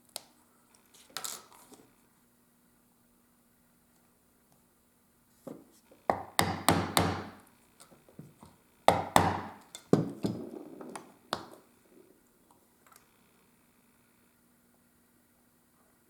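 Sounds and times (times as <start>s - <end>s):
mallet striking leather tool: 6.1s - 7.4s, 8.9s - 10.4s.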